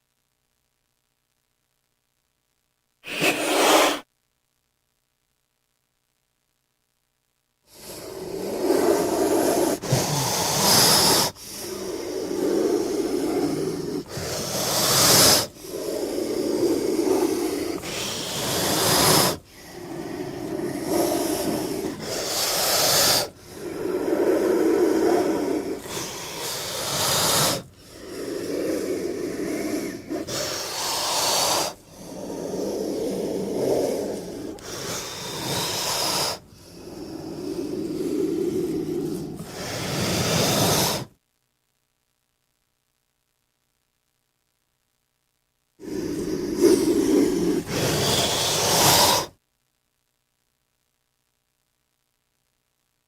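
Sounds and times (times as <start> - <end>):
snake hissing: 3.0 - 4.0, 7.7 - 41.1, 45.8 - 49.4.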